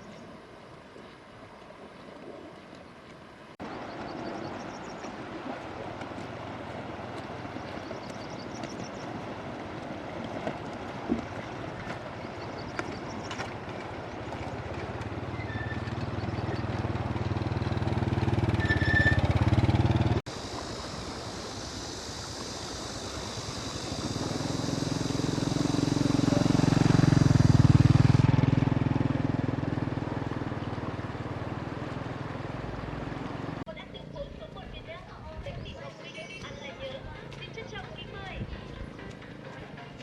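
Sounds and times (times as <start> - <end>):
vehicle passing by: 3.6 - 20.2, 22.7 - 34.6
vehicle engine running: 5.6 - 40.0.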